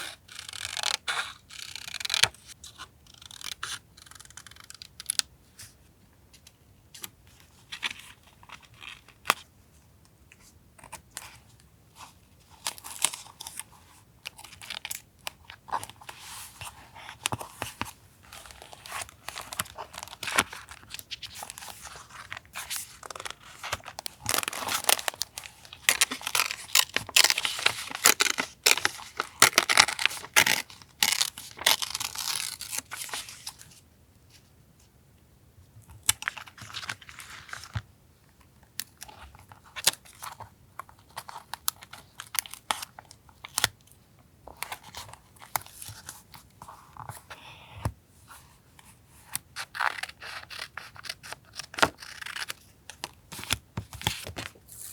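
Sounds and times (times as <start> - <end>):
paper rustling and crinkling: 15.4 - 33.8.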